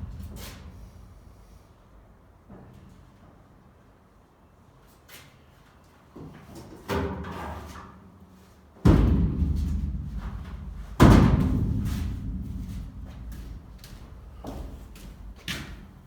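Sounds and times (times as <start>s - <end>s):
heavy thumps: 0.0s - 1.4s, 8.9s - 16.0s.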